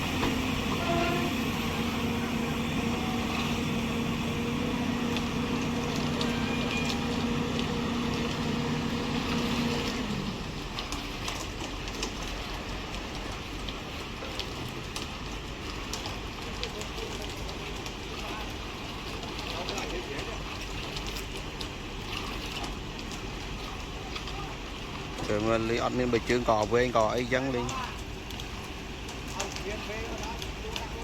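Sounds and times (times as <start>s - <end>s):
diesel engine droning: 0.0s - 10.6s.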